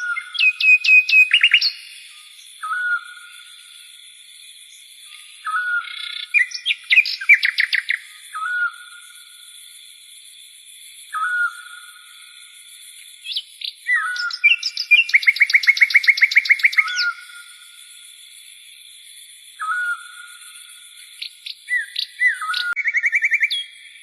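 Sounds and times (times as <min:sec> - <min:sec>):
bird whistled calls: 0:00.0 - 0:03.3, 0:05.4 - 0:09.1, 0:11.1 - 0:11.9, 0:13.2 - 0:17.5, 0:19.6 - 0:20.3, 0:21.2 - 0:23.8.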